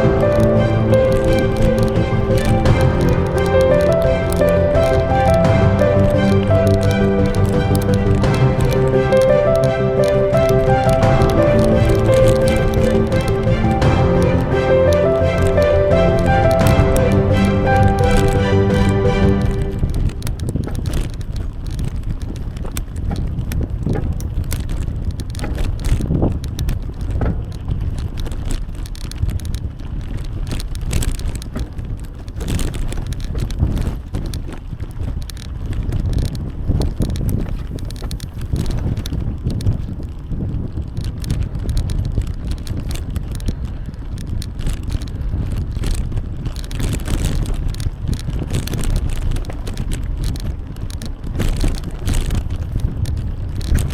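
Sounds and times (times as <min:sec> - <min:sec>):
bicycle tyres rolling: 0:19.3 - 0:53.9
bike clicks and rattles: 0:20.1 - 0:53.9.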